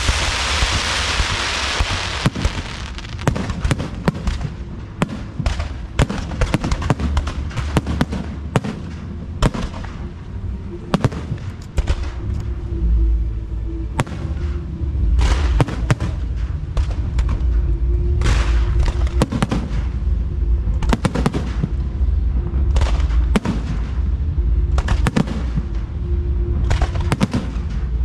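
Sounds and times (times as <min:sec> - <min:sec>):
fireworks crackling hiss: 0:00.0 - 0:04.4
fireworks bangs and pops: 0:00.0 - 0:10.0, 0:22.7 - 0:25.9.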